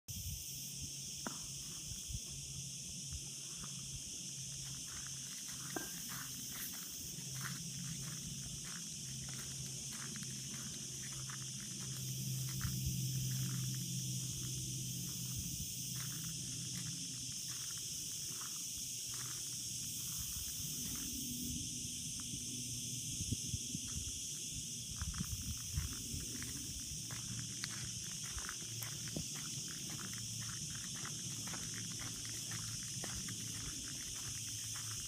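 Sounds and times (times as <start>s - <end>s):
cicadas buzzing: 0.1s - 35.0s
footsteps crunching: 1.1s - 21.3s, 24.8s - 35.0s.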